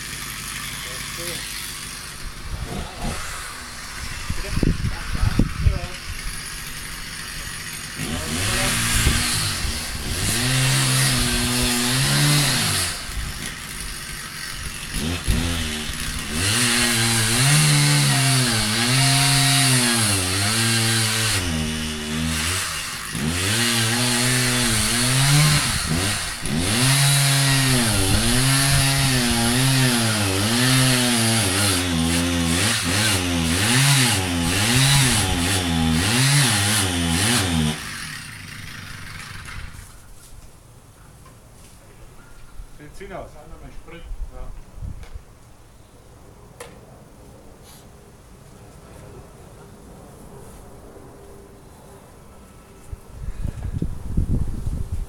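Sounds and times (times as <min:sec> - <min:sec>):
chainsaw running hard: 0:00.0 - 0:40.0.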